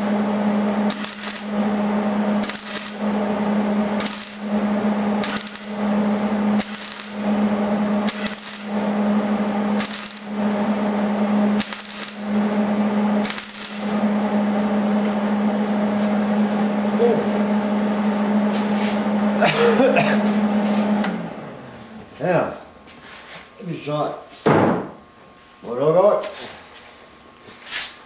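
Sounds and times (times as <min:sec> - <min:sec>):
welder crackling: 0:00.0 - 0:15.9
steady electrical hum: 0:00.0 - 0:28.0.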